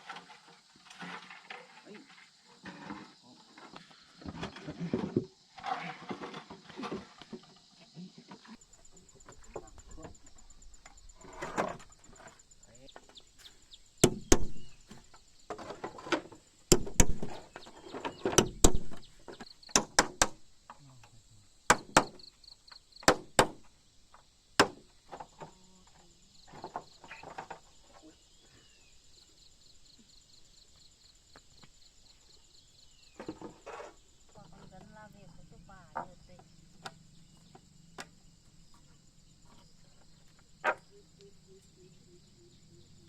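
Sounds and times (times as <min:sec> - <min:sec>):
insects chirping: 0:00.0 - 0:43.0
sharp knocks and thuds: 0:13.0 - 0:20.8, 0:21.7 - 0:22.4, 0:23.0 - 0:25.6.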